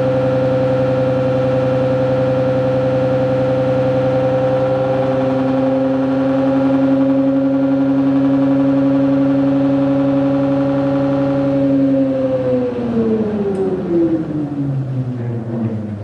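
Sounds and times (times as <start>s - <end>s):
low hum: 10.0s - 16.0s.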